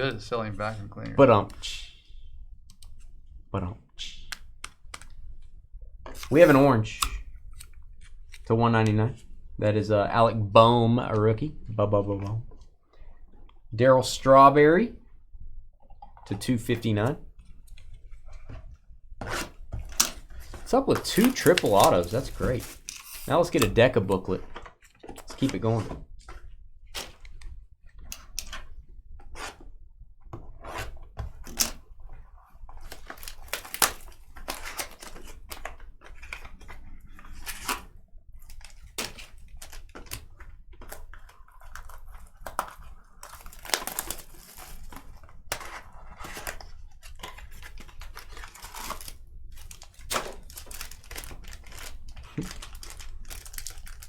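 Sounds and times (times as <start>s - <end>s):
card packaging crinkling and tearing: 6.2s - 8.2s, 19.9s - 24.4s, 32.7s - 54.0s.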